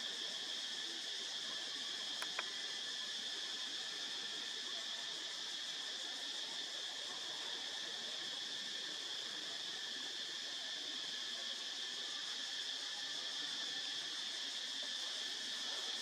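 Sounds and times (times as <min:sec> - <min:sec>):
high-pitched insect chorus: 0:00.0 - 0:16.0.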